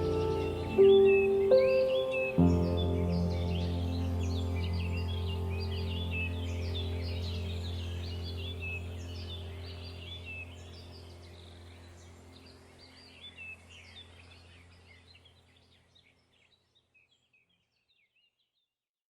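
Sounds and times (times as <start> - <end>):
low steady hum: 0.0 - 15.7
small birds chirping: 0.0 - 18.7.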